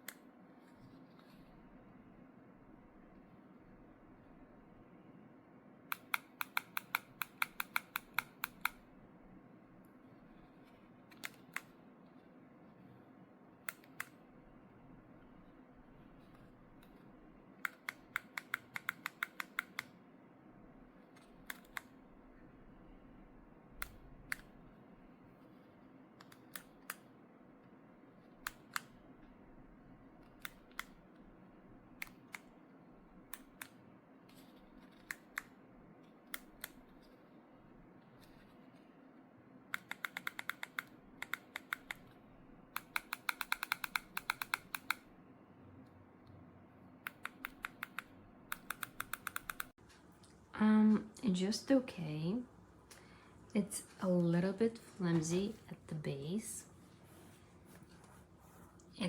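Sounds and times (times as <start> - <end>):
faint steady hum: 0.0 - 59.0
sharp small clicks: 5.9 - 8.8, 17.6 - 20.0, 39.8 - 45.1, 47.1 - 50.4.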